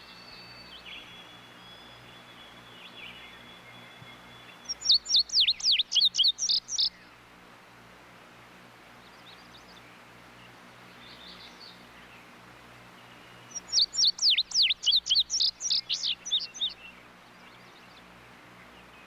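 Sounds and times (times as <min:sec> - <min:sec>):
bird song with high sweeping notes: 0:00.0 - 0:07.0, 0:13.0 - 0:19.0.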